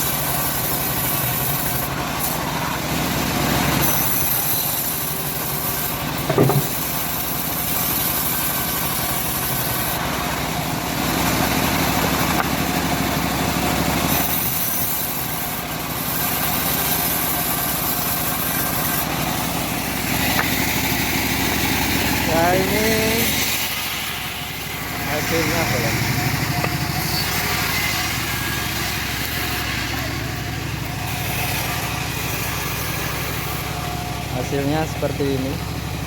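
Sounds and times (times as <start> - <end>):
bandsaw mill sawing wood: 0.0 - 36.0
loud knock: 6.3 - 6.8.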